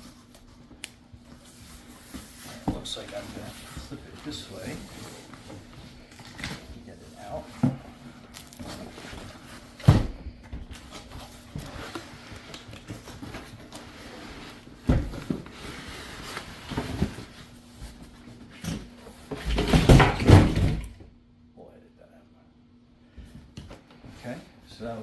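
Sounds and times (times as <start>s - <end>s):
cardboard rustling and scraping: 0.0s - 20.4s.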